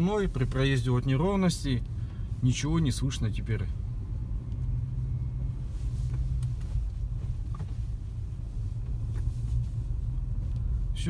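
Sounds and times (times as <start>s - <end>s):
car engine hum: 0.0s - 11.0s
road rumble: 0.0s - 11.0s.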